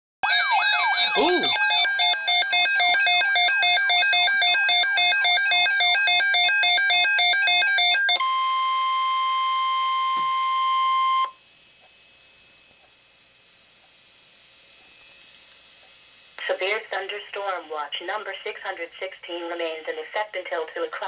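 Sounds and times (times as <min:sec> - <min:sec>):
steady alarm tone: 0:00.2 - 0:12.8
repeating electronic beeping alert: 0:00.9 - 0:08.3
faint radio hiss: 0:14.8 - 0:21.0.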